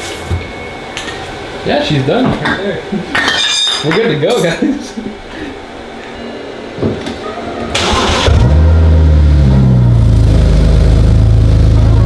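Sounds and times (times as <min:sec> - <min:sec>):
starter motor whir: 0:07.7 - 0:12.0
car engine revving and idling: 0:07.8 - 0:12.0.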